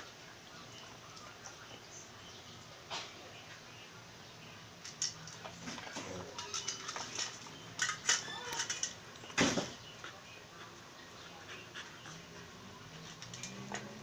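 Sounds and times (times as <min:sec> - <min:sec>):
dog eating from a bowl: 0:04.9 - 0:09.1.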